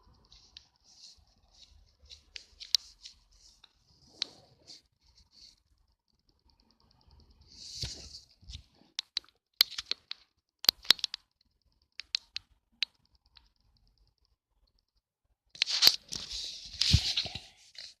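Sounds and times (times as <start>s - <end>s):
sharp clicks and taps: 8.5s - 15.1s
rustling and scraping: 15.6s - 18.0s.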